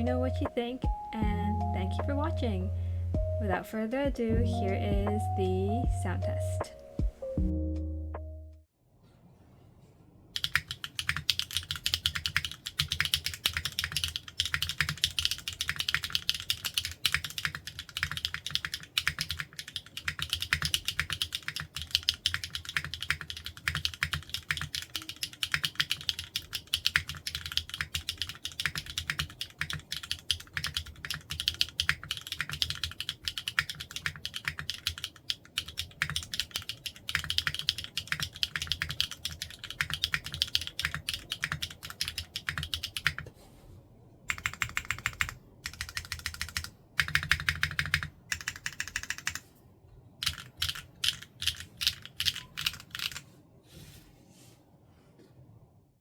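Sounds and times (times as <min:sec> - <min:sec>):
fast mechanical keyboard typing: 0:10.4 - 0:43.3, 0:44.3 - 0:49.5, 0:50.2 - 0:53.2.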